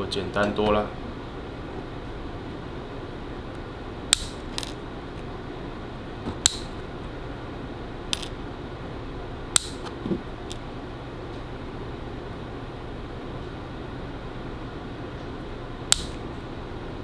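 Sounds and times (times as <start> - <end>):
sharp metallic clicks of hand tools: 4.1 - 4.8, 8.1 - 8.3, 9.6 - 9.9, 15.9 - 16.2.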